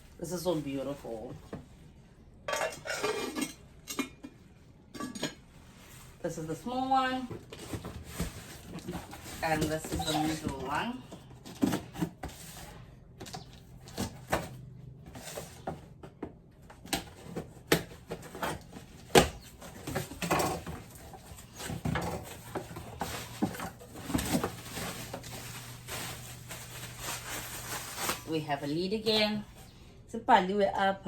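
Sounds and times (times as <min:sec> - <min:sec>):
pots and lids clicking and knocking: 0:02.5 - 0:04.4, 0:05.0 - 0:05.4
packaging rustling: 0:07.4 - 0:10.6, 0:17.1 - 0:28.3.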